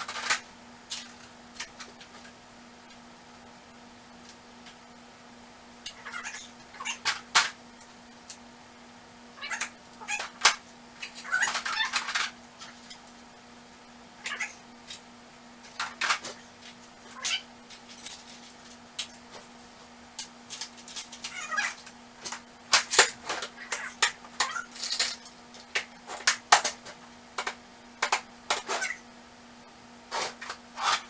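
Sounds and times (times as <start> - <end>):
steady low hum: 0.0 - 31.0
metal tools clattering: 17.7 - 19.2, 24.4 - 25.7.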